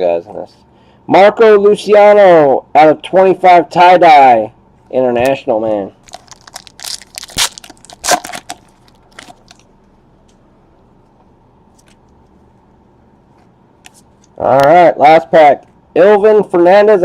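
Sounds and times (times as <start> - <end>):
foil wrapper crinkling: 6.0 - 9.7
cards being handled: 11.6 - 12.4.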